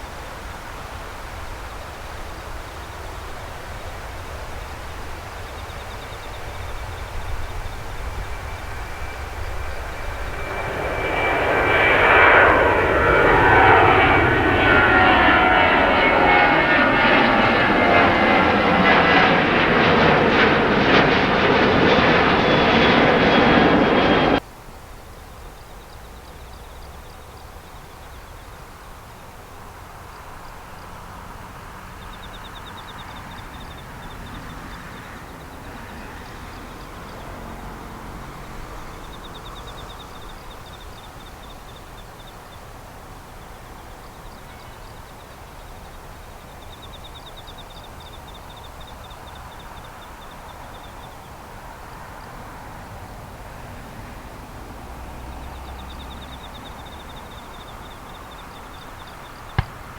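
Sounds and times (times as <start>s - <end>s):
distant traffic hum: 0.0s - 24.4s, 25.8s - 42.7s, 43.4s - 59.9s
insects chirping in trills: 55.7s - 59.9s.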